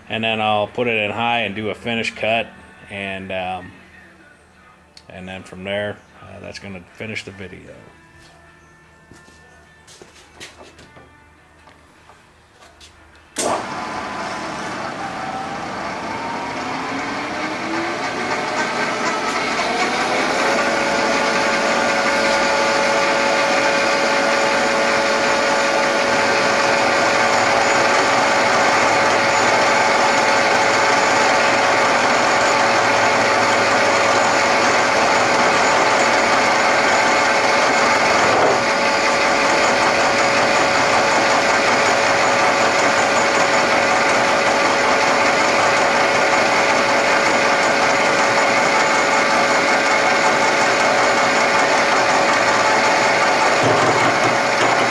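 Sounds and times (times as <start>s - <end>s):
machining noise: 13.4s - 54.9s
milling machine whine: 13.4s - 54.9s.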